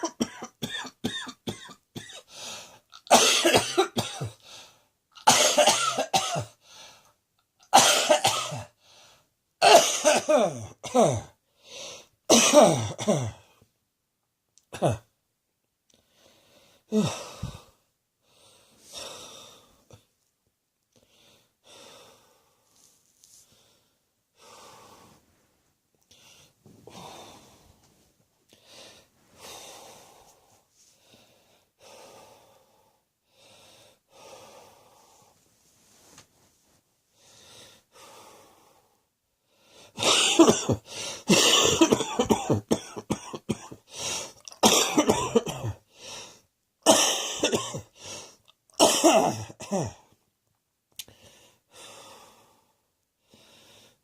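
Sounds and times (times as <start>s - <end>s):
person coughing: 0.0s - 2.3s, 3.0s - 4.4s, 5.2s - 6.6s, 7.6s - 8.8s, 9.6s - 11.4s, 12.3s - 13.4s, 14.7s - 15.1s, 17.0s - 17.6s, 40.0s - 43.9s, 44.6s - 45.8s, 46.9s - 48.0s, 48.8s - 50.1s
soft breaths: 15.9s - 20.1s, 20.9s - 40.0s, 51.0s - 54.0s.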